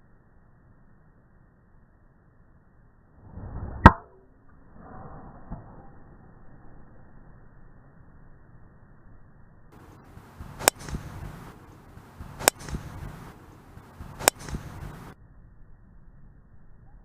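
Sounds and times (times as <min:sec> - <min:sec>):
golf club striking ball: 0:09.8 - 0:15.2.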